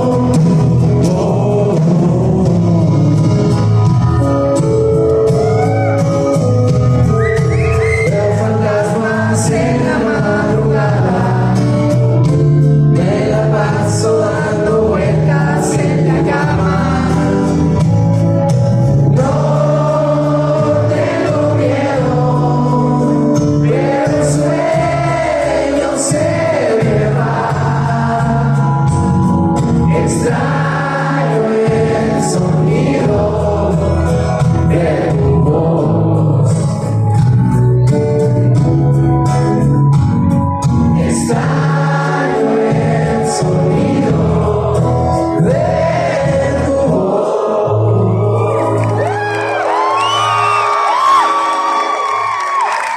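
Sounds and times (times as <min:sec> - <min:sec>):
person singing: 0:00.0 - 0:03.8, 0:07.1 - 0:18.0, 0:29.7 - 0:37.2
live pop-rock band: 0:00.0 - 0:52.9.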